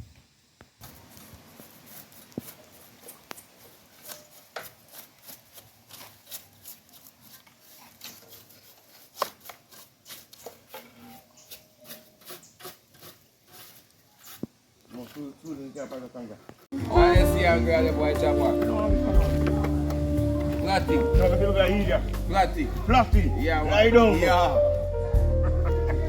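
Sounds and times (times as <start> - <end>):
scraping and rubbing on metal parts: 0.8 - 15.4.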